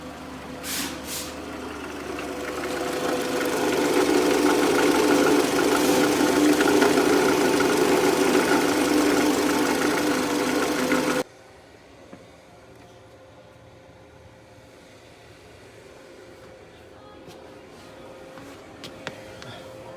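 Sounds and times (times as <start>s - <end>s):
engine running: 0.0s - 11.2s
alternator mechanical drone: 1.4s - 11.2s.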